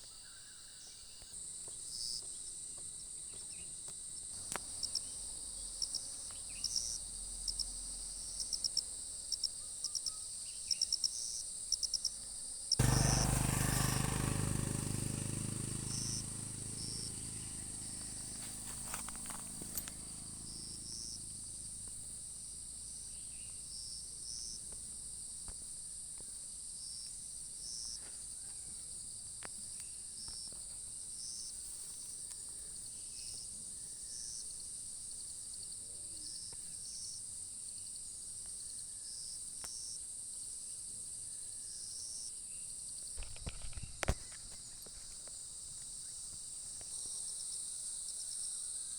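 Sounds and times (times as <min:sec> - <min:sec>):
insects droning: 0:00.0 - 0:48.9
short insect chirps: 0:12.8 - 0:24.6.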